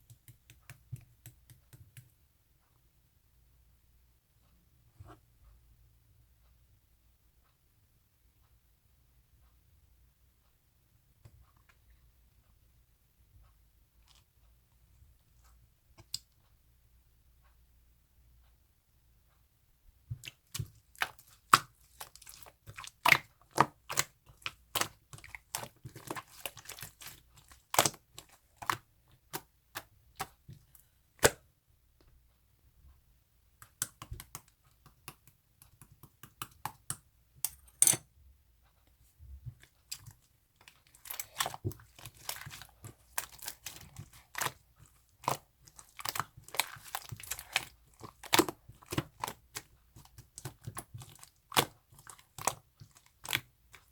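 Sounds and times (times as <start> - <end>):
sticky slime pops and crackles: 45.2 - 52.6.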